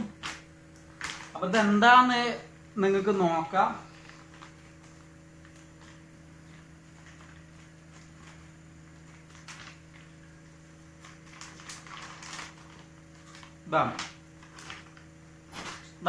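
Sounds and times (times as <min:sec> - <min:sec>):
electrical hum: 0:00.0 - 0:16.0
packaging rustling and crinkling: 0:00.1 - 0:01.4, 0:03.9 - 0:16.0.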